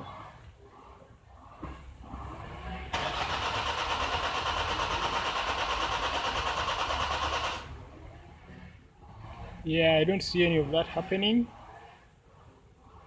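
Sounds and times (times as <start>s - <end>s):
starter motor cranking engine: 2.9s - 7.8s.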